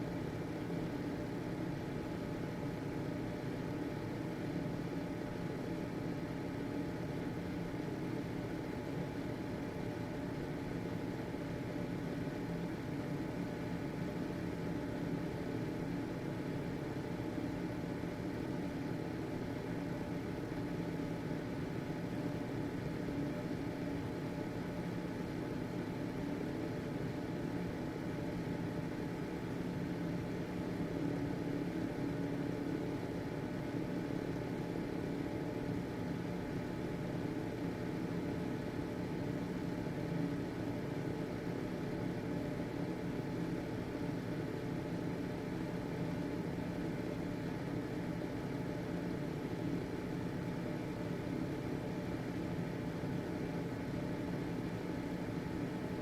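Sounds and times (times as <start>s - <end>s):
ventilation fan running: 0.0s - 56.0s.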